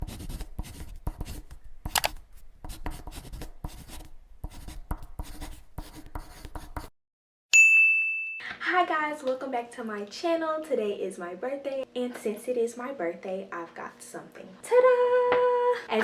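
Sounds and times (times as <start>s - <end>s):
bright ringing ding: 7.5s - 8.5s.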